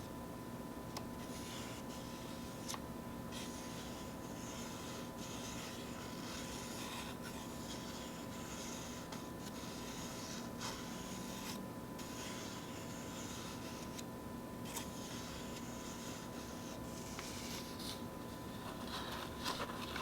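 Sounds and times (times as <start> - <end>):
paper tearing slowly: 3.4 - 14.0.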